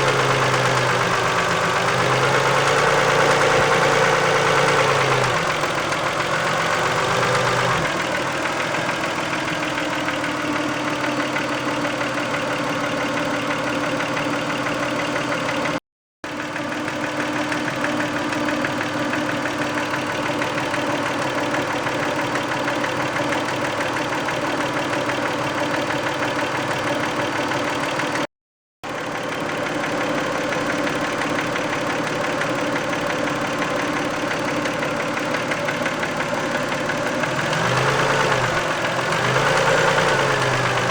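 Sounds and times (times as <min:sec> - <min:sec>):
car engine idling with knock: 0:00.0 - 0:40.9.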